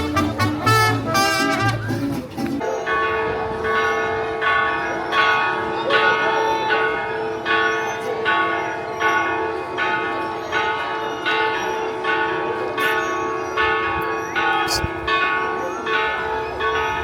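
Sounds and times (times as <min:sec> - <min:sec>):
church bell ringing: 0:00.0 - 0:01.7, 0:02.6 - 0:17.0.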